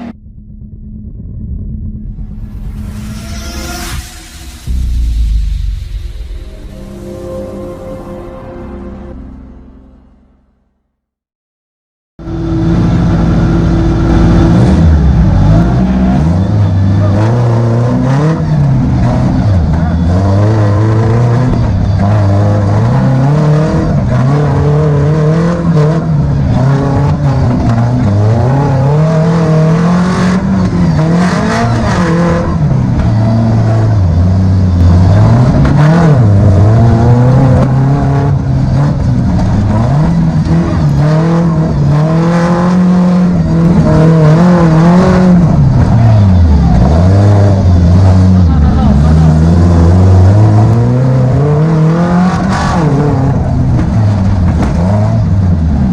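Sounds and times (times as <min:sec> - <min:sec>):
off-road vehicle engine revving: 0:12.2 - 0:55.9.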